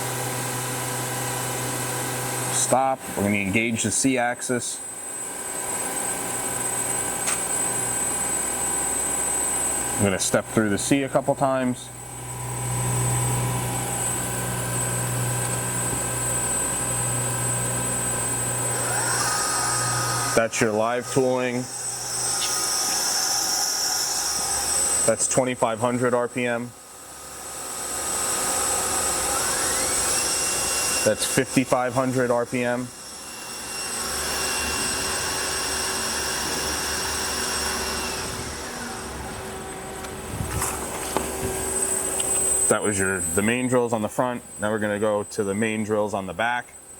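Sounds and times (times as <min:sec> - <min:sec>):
lathe electrical hum: 0:00.0 - 0:46.9
machine noise: 0:00.0 - 0:46.9
faint high whine: 0:02.4 - 0:46.9.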